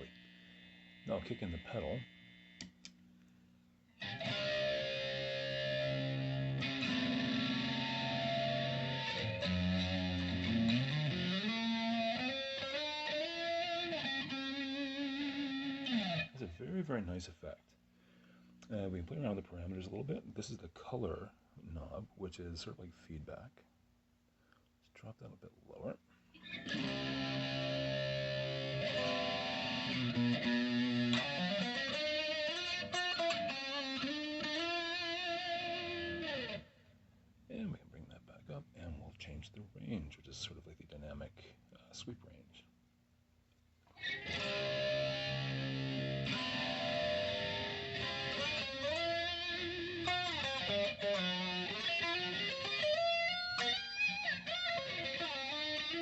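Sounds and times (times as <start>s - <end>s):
distorted electric guitar with flanger: 0.0s - 2.7s, 4.0s - 16.5s, 26.4s - 36.7s, 43.9s - 56.0s.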